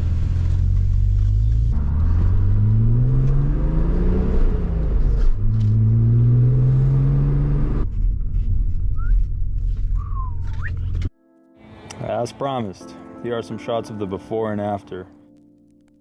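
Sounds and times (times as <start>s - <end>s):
car engine accelerating: 0.0s - 11.1s.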